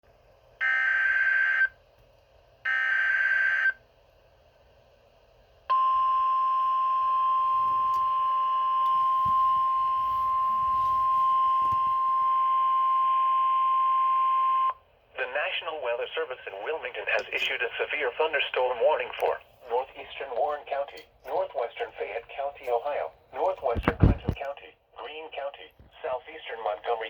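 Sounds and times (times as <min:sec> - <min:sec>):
steady warning alarm tone: 0:00.6 - 0:01.8, 0:02.7 - 0:03.8, 0:05.7 - 0:14.8.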